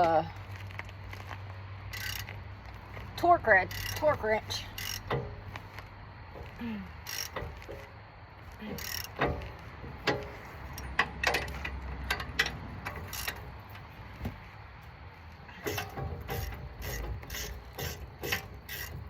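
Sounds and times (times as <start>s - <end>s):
metallic clicks and clanks of tools: 1.9s - 2.4s, 3.2s - 5.7s, 6.4s - 8.0s, 8.6s - 13.9s, 15.6s - 19.0s.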